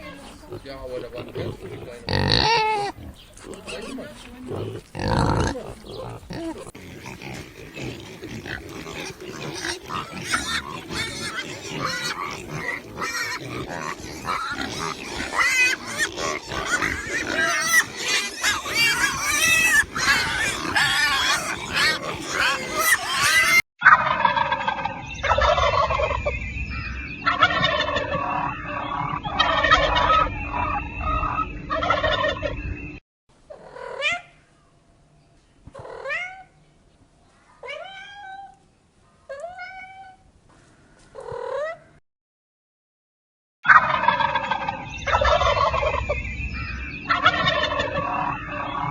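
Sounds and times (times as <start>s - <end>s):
flock of fowl calling: 7.3s - 26.1s, 27.2s - 32.5s, 47.0s - 48.9s
short rising and falling animal calls: 9.6s - 23.6s.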